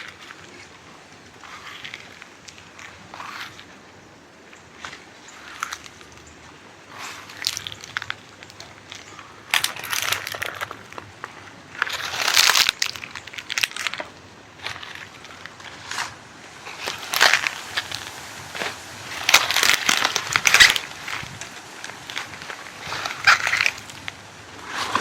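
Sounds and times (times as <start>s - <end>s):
footsteps on dry leaves: 6.9s - 25.0s.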